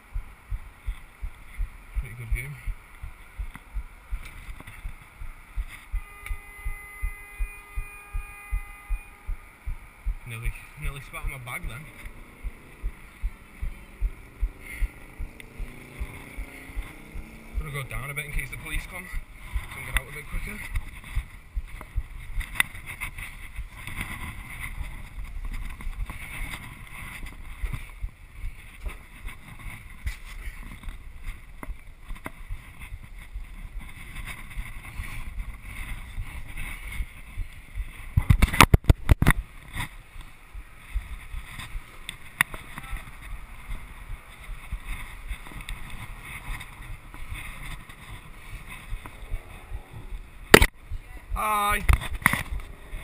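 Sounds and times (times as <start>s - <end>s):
wind on camera microphone: 6.7s - 53.0s
knocks and scrapes of climbing: 18.2s - 50.4s.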